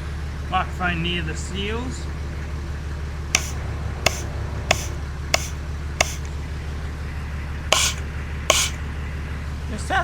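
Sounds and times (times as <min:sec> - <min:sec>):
steady low hum: 0:03.0 - 0:09.4
air hiss: 0:03.4 - 0:06.2, 0:07.7 - 0:08.8
sharp clicks: 0:03.4 - 0:06.3, 0:07.7 - 0:08.8.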